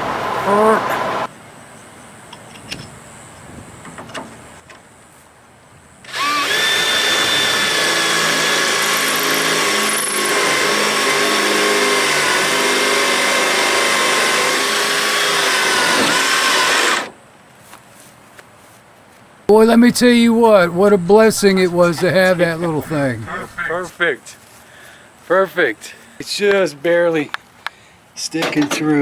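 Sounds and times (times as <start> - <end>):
power drill boring into wood: 6.1 - 17.1.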